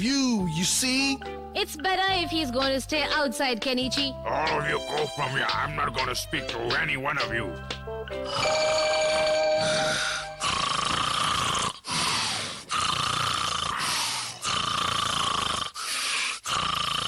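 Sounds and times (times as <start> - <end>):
music cue with held tones: 7.4 - 10.9
cartoon dog snoring: 9.5 - 17.0.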